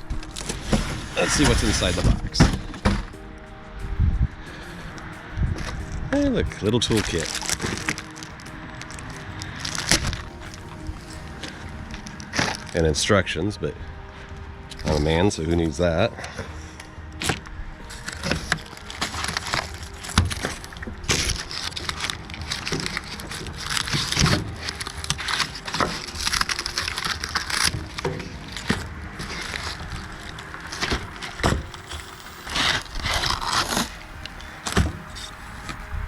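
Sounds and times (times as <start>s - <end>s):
cardboard rustling and crackling: 5.6s - 12.9s, 17.2s - 36.0s.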